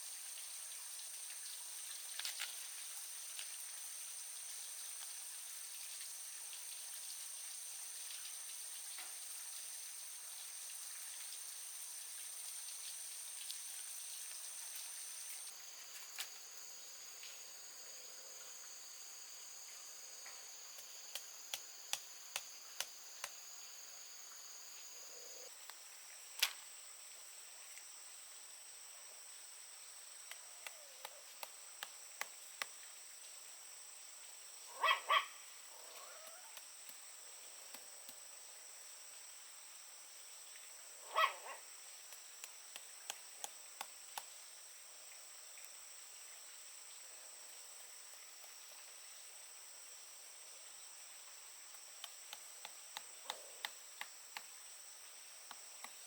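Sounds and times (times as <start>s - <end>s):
high-pitched insect drone: 0.0s - 32.2s.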